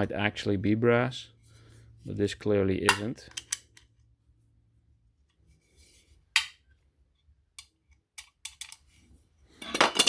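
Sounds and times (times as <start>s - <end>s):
metal parts clicking and tapping: 7.5s - 8.9s
metal parts clattering: 9.6s - 10.0s.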